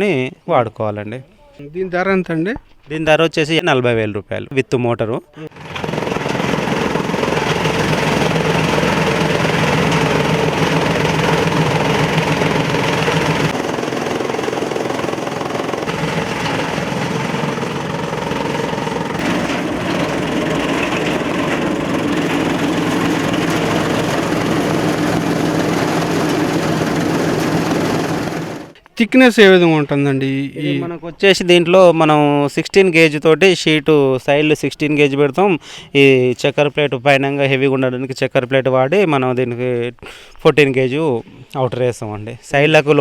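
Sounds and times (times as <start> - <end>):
chaff cutter running: 5.5 - 28.8
mechanical clatter: 5.6 - 28.8.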